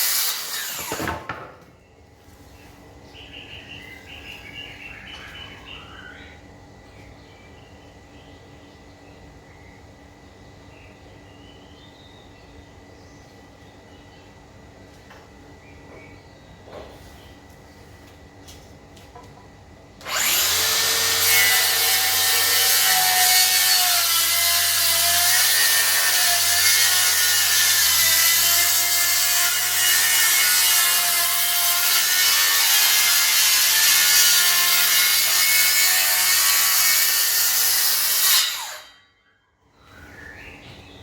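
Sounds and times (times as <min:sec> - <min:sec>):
circular saw cutting wood: 0:00.0 - 0:01.3, 0:20.0 - 0:39.0.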